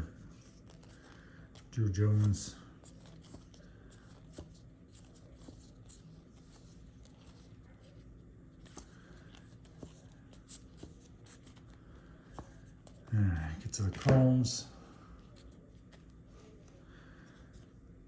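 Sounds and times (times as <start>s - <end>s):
low steady hum: 0.0s - 18.0s
trading cards flipped by hand: 8.6s - 11.7s, 13.8s - 14.3s.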